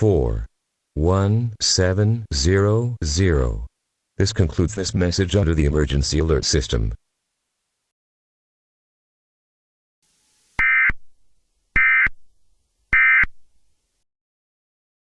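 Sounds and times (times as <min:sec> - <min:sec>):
digital data tone bursts: 0:10.6 - 0:11.0, 0:11.8 - 0:12.1, 0:13.0 - 0:13.3.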